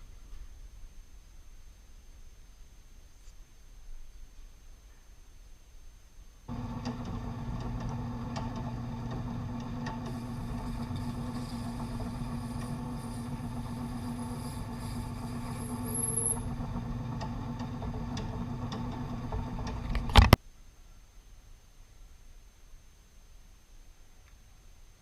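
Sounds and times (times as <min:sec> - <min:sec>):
lathe motor humming: 0:06.5 - 0:20.4.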